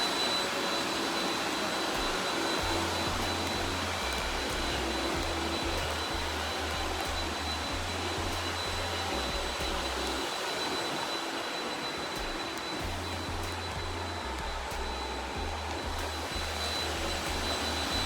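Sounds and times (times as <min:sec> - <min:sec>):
robot vacuum cleaner whining: 0:00.0 - 0:18.0
music with low bass: 0:02.6 - 0:10.2, 0:12.2 - 0:18.0.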